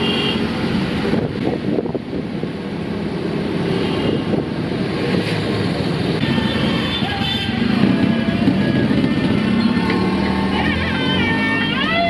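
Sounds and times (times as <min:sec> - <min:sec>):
auto rickshaw engine running: 0:00.0 - 0:12.0
wind buffeting microphone: 0:01.0 - 0:02.7.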